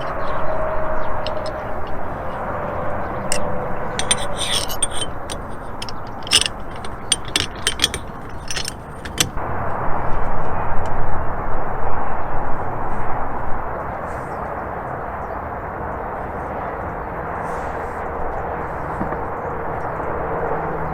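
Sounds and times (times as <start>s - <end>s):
small hardware clicking and scraping: 0.0s - 9.4s.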